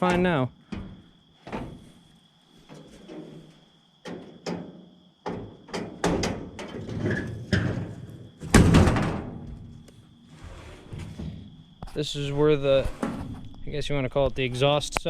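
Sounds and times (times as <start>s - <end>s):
metal panels knocking and clattering: 0.0s - 2.0s, 2.6s - 9.9s, 10.5s - 11.7s.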